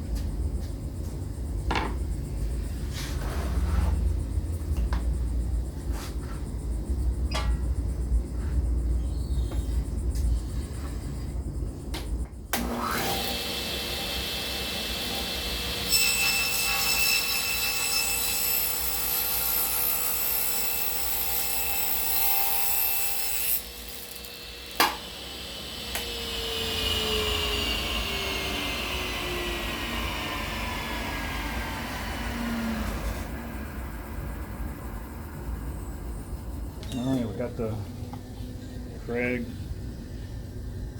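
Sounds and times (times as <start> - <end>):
saw cutting board: 12.6 - 33.4
table saw running: 12.6 - 35.5.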